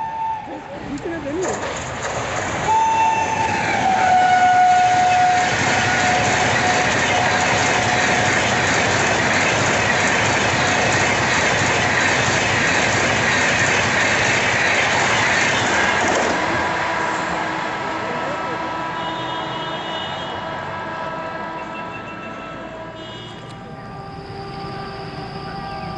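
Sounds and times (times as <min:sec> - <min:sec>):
train horn: 0:00.0 - 0:00.7, 0:02.6 - 0:09.4, 0:10.4 - 0:12.0, 0:15.5 - 0:25.9
train wheels rushing on rails: 0:00.0 - 0:25.9.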